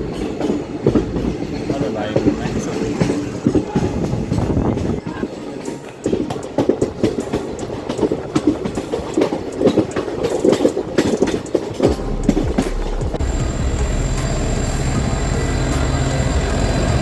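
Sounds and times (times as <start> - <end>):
train wheels clattering: 0.0 - 17.0
steady low rumble: 11.9 - 17.0.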